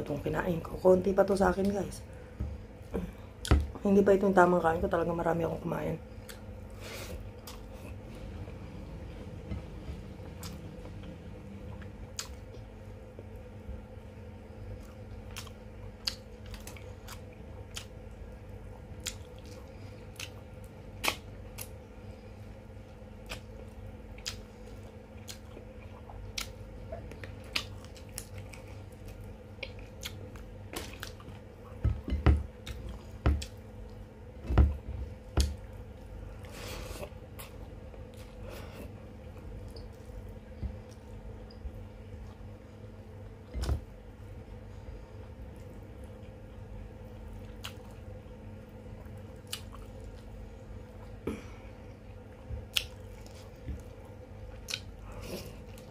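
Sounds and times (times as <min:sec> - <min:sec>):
steady low hum: 0:00.0 - 0:55.9
person chewing food: 0:06.2 - 0:08.1, 0:10.2 - 0:13.4, 0:14.6 - 0:18.2, 0:18.9 - 0:21.8, 0:23.2 - 0:34.0, 0:48.9 - 0:51.2, 0:51.9 - 0:55.9.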